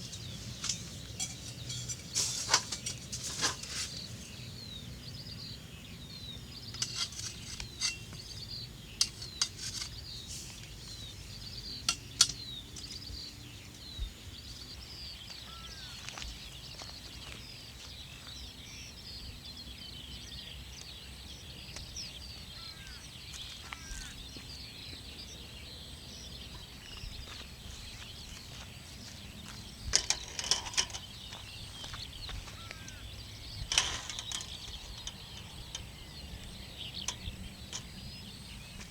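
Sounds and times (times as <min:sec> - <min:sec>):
small birds chirping: 0:00.0 - 0:38.9
sharp clicks and knocks: 0:11.8 - 0:13.0.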